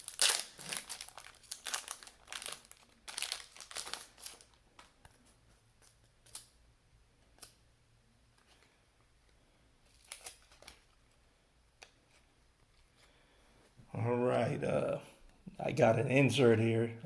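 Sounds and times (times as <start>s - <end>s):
wrapper crinkling and tearing: 0.0s - 6.6s, 9.9s - 11.1s.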